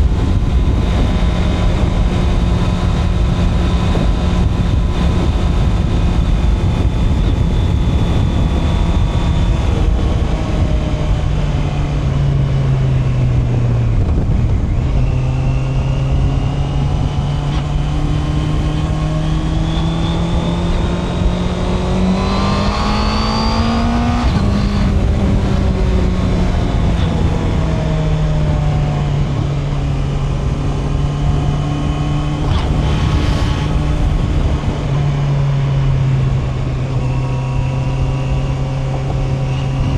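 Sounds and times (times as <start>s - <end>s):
wind rushing on microphone: 0.0s - 39.9s
motorcycle engine revving: 13.9s - 39.9s.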